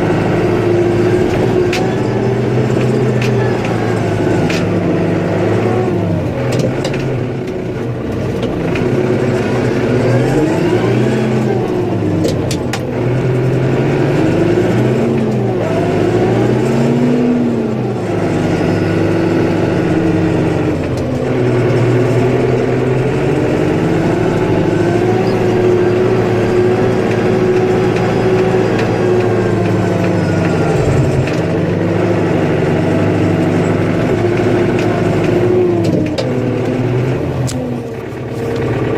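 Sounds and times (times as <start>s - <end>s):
snowplow engine running: 0.0s - 38.9s.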